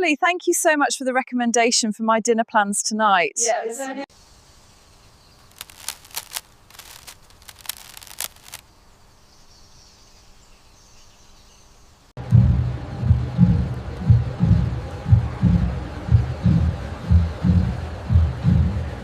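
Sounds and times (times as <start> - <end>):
faint outdoor background: 0.0 - 19.0
sharp high ticks: 5.5 - 8.6
low pulsing beat: 12.2 - 19.0.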